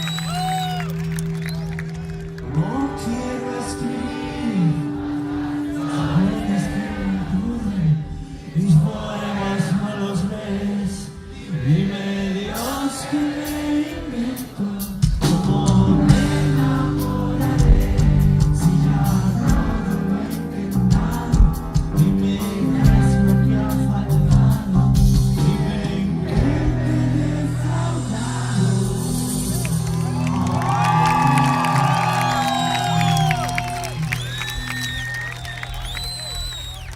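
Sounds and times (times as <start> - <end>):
lead singer singing: 2.4 - 30.0
drums: 12.5 - 36.9
rock band playing live: 12.6 - 34.9.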